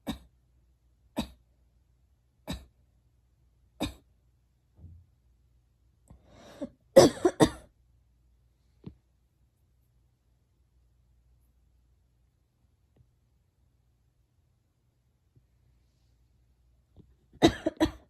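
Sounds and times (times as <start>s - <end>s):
girl coughing: 1.2s - 1.4s, 2.5s - 2.7s, 3.8s - 4.1s, 7.0s - 7.7s, 17.4s - 18.0s
girl breathing: 6.1s - 6.7s.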